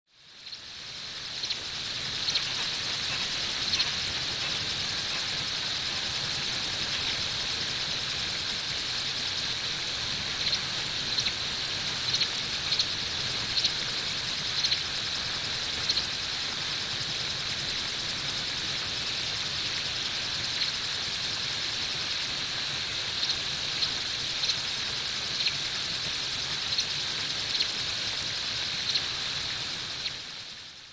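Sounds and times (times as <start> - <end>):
high-pitched insect chirring: 0.2 - 17.5.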